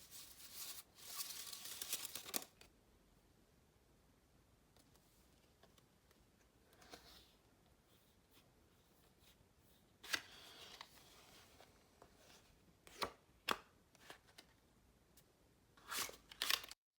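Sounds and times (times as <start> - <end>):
cards rustling: 0.1 - 2.7.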